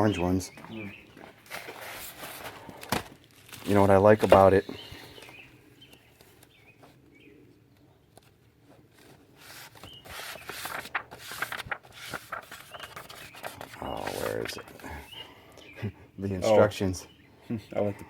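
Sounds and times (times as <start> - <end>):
faint bird chirps: 4.5 - 8.1
rustling: 8.2 - 15.0.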